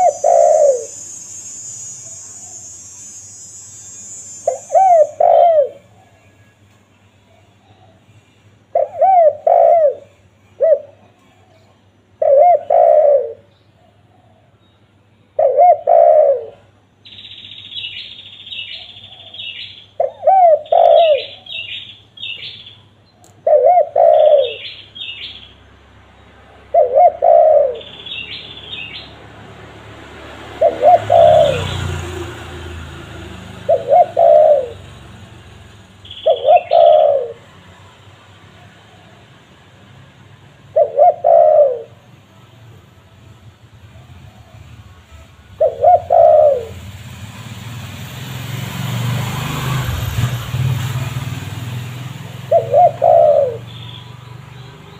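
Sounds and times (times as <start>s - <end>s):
dove cooing: 0.0s - 1.2s, 4.5s - 6.2s, 8.7s - 14.5s, 15.4s - 16.7s, 18.7s - 21.8s, 23.3s - 24.8s, 26.6s - 28.3s, 30.3s - 35.4s, 36.1s - 37.7s, 40.6s - 42.1s, 44.0s - 44.8s, 45.6s - 46.8s, 52.4s - 54.0s
small bird chirping: 0.0s - 5.7s, 17.0s - 23.4s, 24.0s - 25.6s, 27.2s - 29.3s, 33.6s - 37.4s, 52.5s - 54.9s.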